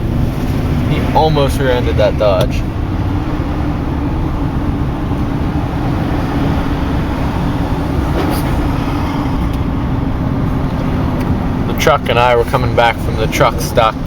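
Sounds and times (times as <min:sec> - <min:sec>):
engine and road noise: 0:00.0 - 0:14.0.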